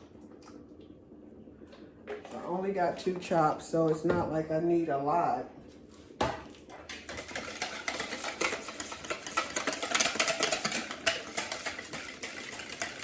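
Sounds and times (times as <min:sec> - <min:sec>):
whisk clicking against bowl: 0:06.8 - 0:13.0.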